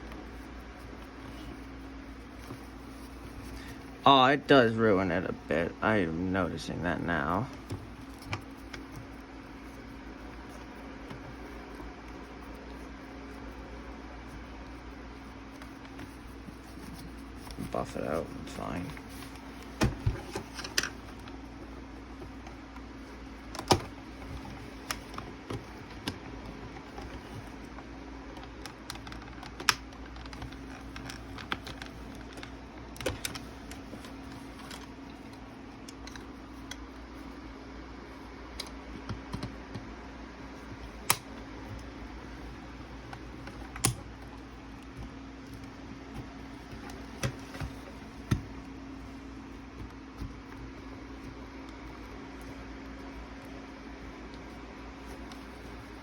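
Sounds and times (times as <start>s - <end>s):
faint steady hum: 0.0s - 56.0s.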